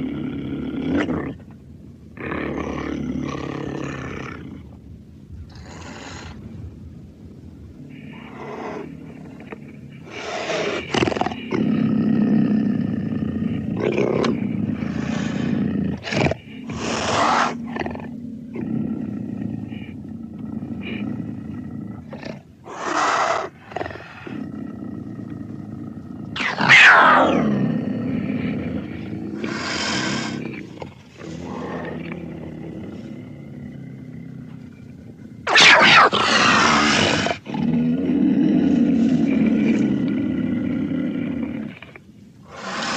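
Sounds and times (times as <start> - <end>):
breathy hisses: 14.3 - 17.8, 22.7 - 24.4, 27.3 - 32.0, 42.4 - 42.9
loud snarling cry: 26.4 - 28.2, 35.4 - 41.4
creature growling: 35.5 - 41.6.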